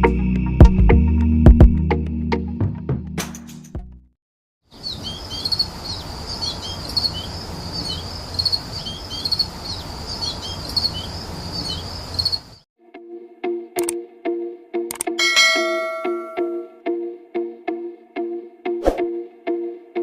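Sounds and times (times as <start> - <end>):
birds chirping: 4.7 - 12.6.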